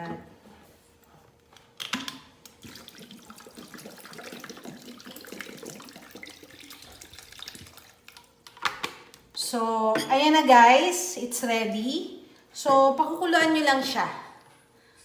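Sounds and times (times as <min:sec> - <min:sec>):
water pouring into a pot: 0:02.5 - 0:08.4.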